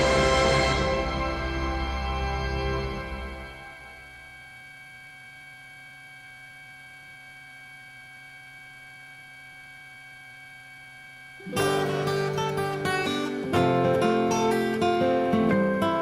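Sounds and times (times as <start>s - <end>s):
loud strummed guitar: 11.4s - 16.0s
soft held chord: 11.4s - 16.0s.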